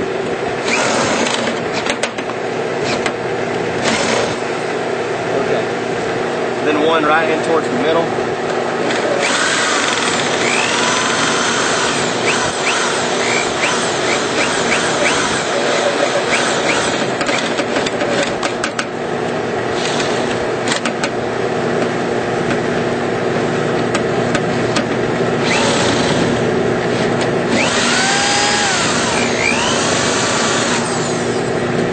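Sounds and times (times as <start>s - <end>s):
steady background noise: 0.0s - 31.9s
power drill drilling into metal: 0.6s - 1.8s, 3.8s - 4.4s, 8.9s - 17.6s, 25.4s - 26.4s, 27.5s - 31.5s
sharp clicks and knocks: 1.2s - 2.4s, 17.0s - 18.9s, 20.7s - 21.2s
drill bit squealing: 9.2s - 17.5s, 27.5s - 31.5s.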